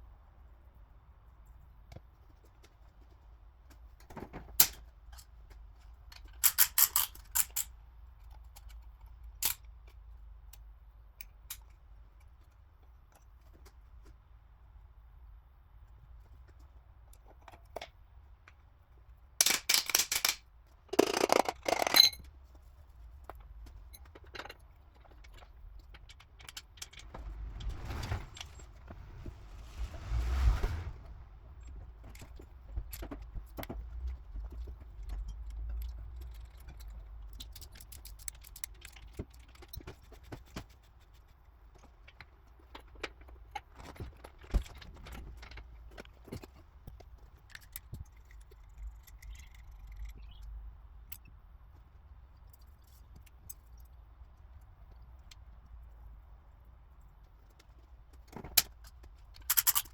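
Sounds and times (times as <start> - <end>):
scrapes: 26.3 - 33.3.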